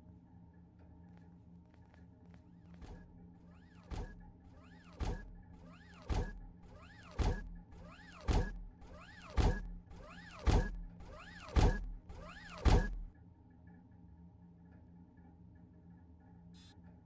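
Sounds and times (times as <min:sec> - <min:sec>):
steady low hum: 0:00.0 - 0:17.0
motor whir: 0:02.8 - 0:13.1
heavy mechanical thunk: 0:03.8 - 0:13.1.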